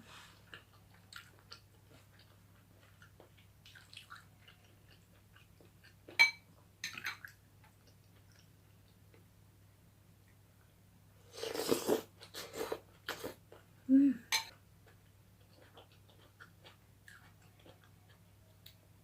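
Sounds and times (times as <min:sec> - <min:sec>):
chewing chicken bones: 0:14.8 - 0:18.8.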